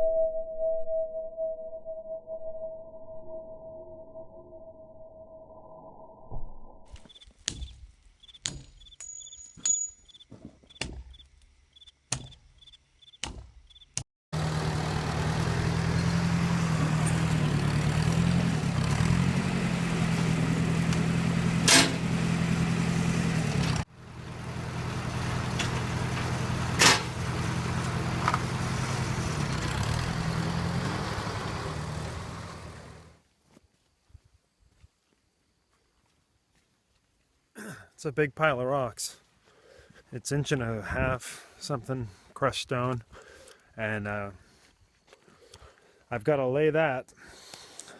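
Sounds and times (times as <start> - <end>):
tractor engine running: 14.4 - 33.2.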